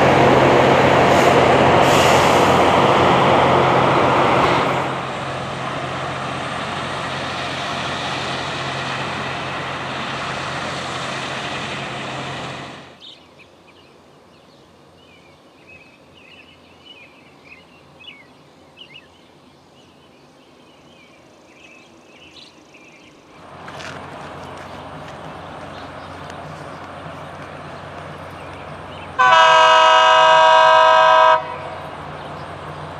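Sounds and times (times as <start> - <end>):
rail grinder engine and grinding: 0.0 - 13.0, 23.4 - 32.9
small birds chirping: 13.0 - 29.2, 31.6 - 32.9.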